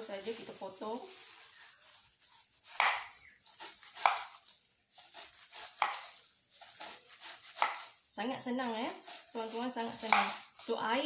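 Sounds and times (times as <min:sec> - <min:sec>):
knife cutting onion: 0:02.6 - 0:08.0, 0:08.9 - 0:10.8.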